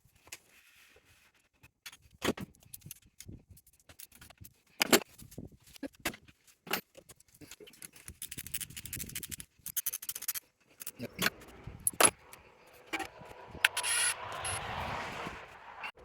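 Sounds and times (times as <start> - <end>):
metallic scrape: 10.2 - 16.0.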